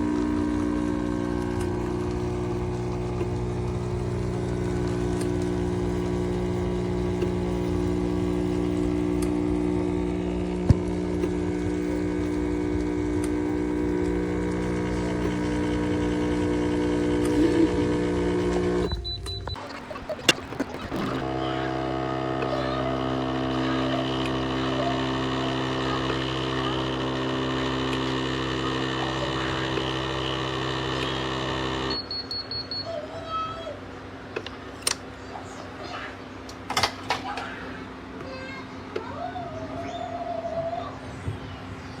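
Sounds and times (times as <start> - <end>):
coffee stream running: 0.0 - 32.0
espresso machine pump humming: 0.0 - 32.6.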